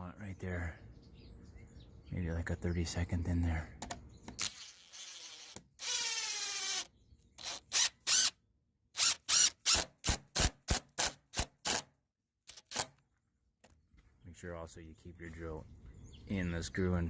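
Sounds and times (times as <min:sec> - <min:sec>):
impact driver bursts: 0:04.4 - 0:08.4, 0:09.0 - 0:11.9.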